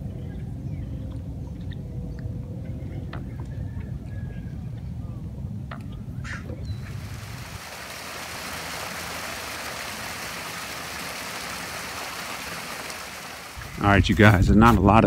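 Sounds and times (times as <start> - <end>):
running water hissing: 6.8 - 14.4.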